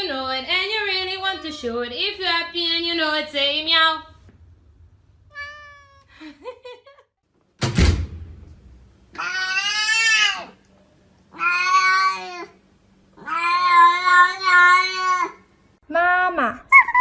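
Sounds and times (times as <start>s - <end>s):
cat meowing: 5.3s - 6.1s, 9.2s - 10.6s, 11.3s - 12.6s, 13.2s - 15.4s
thump: 7.6s - 8.6s.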